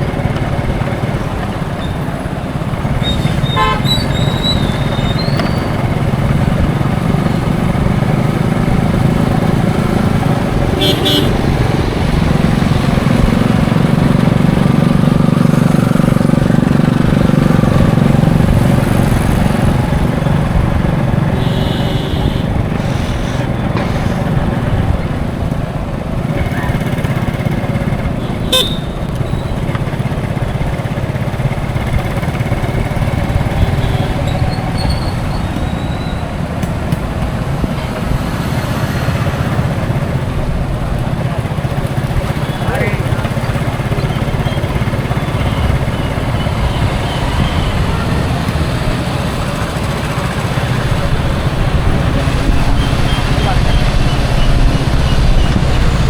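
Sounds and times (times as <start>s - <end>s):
highway traffic drone: 0.0s - 56.0s
car horn toot: 3.0s - 5.7s, 10.7s - 11.6s, 21.3s - 24.4s, 28.1s - 29.6s.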